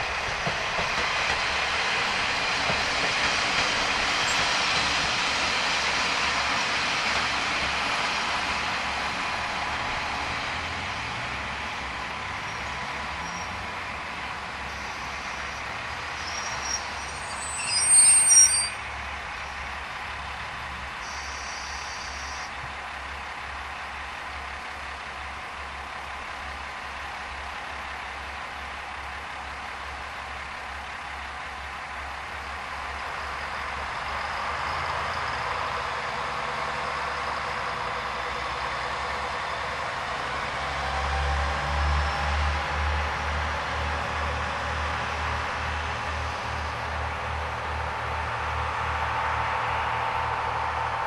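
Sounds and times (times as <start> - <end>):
diesel railcar running: 0.0 - 51.0
high-pitched squeal: 14.7 - 19.0.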